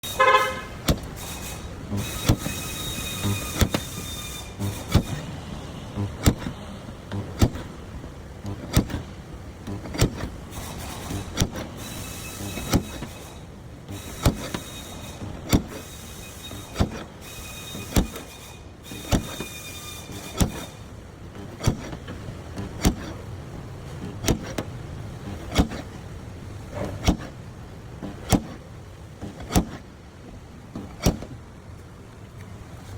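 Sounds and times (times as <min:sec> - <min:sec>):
hiss: 0:00.0 - 0:09.0, 0:09.9 - 0:20.9.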